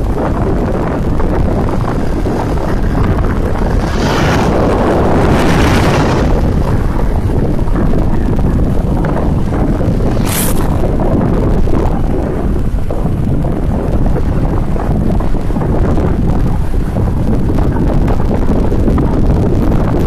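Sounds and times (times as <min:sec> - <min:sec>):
wind buffeting microphone: 0:00.0 - 0:20.0
brief sharp hiss: 0:10.1 - 0:10.7.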